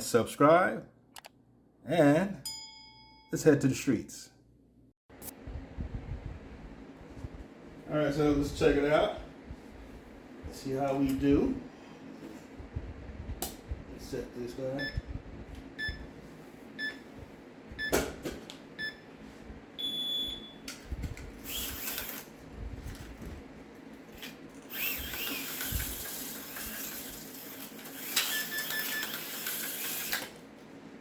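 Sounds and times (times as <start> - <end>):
lap timer beeps: 14.8 - 15.2, 15.8 - 16.1, 16.8 - 17.0, 17.8 - 18.0, 18.8 - 19.1, 19.8 - 20.6
slot car motor whirring: 24.6 - 30.4.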